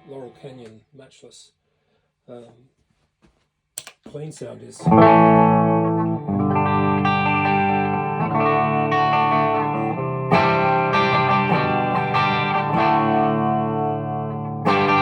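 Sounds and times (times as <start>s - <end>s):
clean electric guitar chords: 4.8s - 15.0s.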